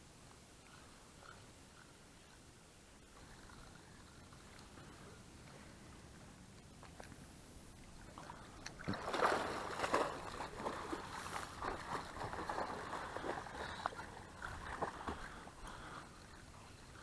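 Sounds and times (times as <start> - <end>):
water splashing against boat: 7.8 - 17.0.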